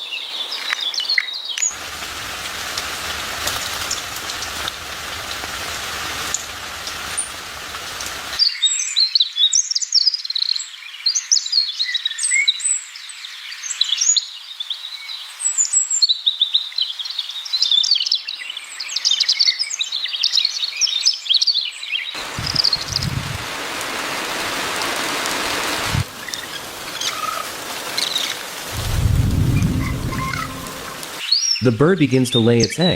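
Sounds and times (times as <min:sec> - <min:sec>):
small birds chirping and twittering: 0:00.0 - 0:23.4, 0:25.6 - 0:32.9
steady rain: 0:01.7 - 0:08.4, 0:22.2 - 0:32.6
low rumbles of thunder: 0:22.3 - 0:23.5, 0:25.8 - 0:26.6, 0:28.7 - 0:31.2.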